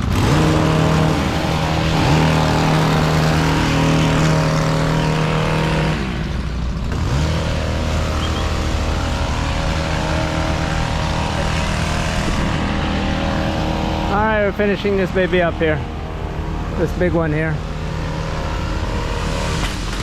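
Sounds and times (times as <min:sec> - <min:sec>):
engine running: 0:00.0 - 0:20.0.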